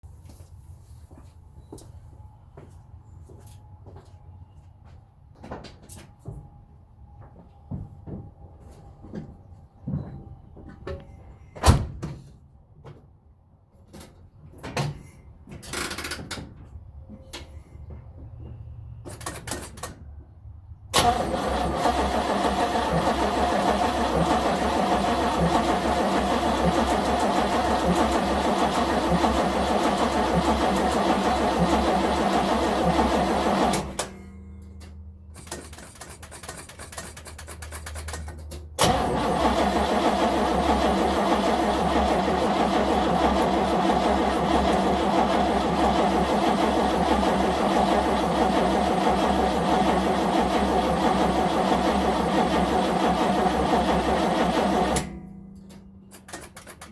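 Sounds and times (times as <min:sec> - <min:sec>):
starter motor cranking engine: 0:21.0 - 0:34.1, 0:38.8 - 0:55.1.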